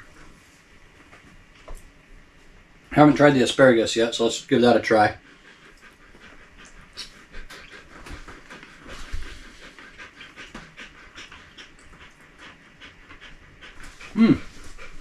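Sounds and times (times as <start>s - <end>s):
dog panting: 0.0s - 15.0s.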